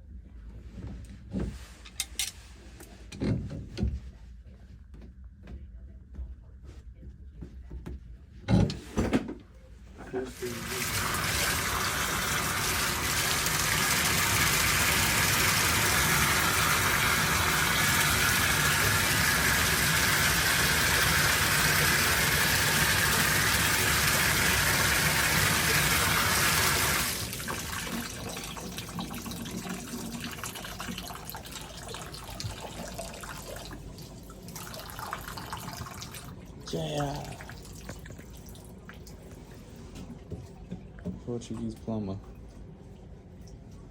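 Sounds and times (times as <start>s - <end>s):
shower water rushing: 10.2s - 39.6s.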